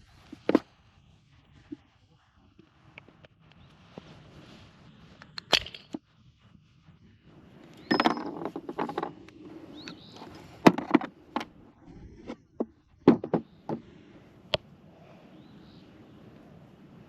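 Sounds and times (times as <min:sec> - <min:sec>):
objects clicking and knocking: 0:05.2 - 0:06.0, 0:07.6 - 0:11.6, 0:12.2 - 0:13.9
bird chirps: 0:07.6 - 0:10.6, 0:14.9 - 0:17.0.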